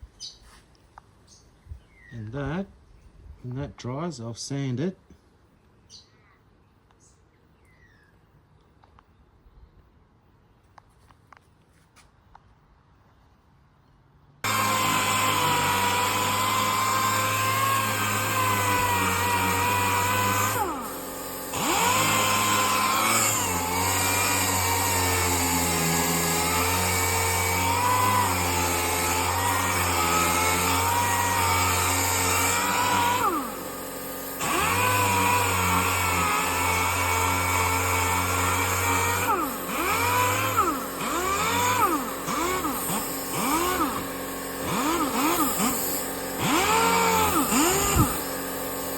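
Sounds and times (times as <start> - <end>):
power sander whining: 14.4 - 48.9.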